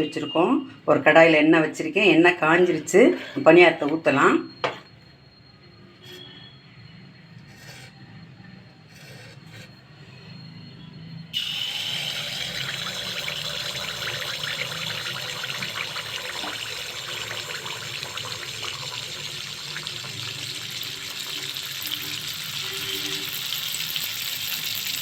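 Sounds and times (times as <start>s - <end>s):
batter sizzling in hot oil: 11.4s - 25.0s.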